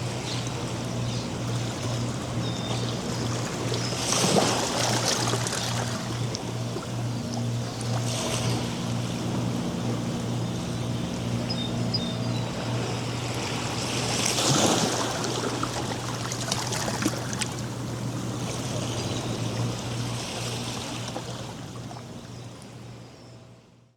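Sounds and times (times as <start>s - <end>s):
waves breaking on beach: 0.0s - 2.4s, 3.0s - 10.3s, 12.5s - 21.9s
steady low hum: 0.0s - 23.9s.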